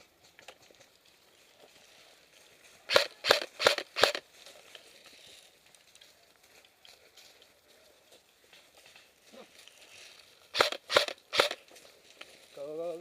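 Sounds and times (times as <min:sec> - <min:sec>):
airsoft gun shots: 0:02.9 - 0:04.2, 0:10.6 - 0:11.6
faint rustling: 0:04.2 - 0:10.6.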